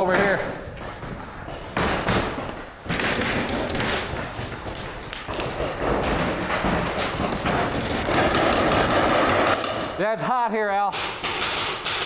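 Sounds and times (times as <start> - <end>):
paintball markers firing: 1.8 - 9.9.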